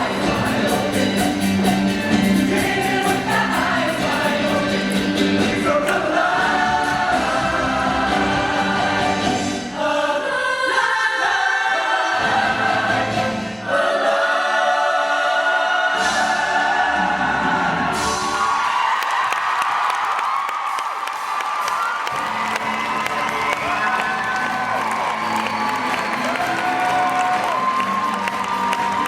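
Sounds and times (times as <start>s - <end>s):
live band accompaniment: 0.0s - 9.6s
choir singing in harmony: 0.0s - 18.4s.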